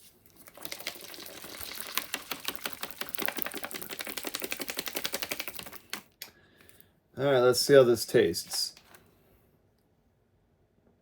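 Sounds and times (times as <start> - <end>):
container rattling rapidly: 0.4 - 6.0.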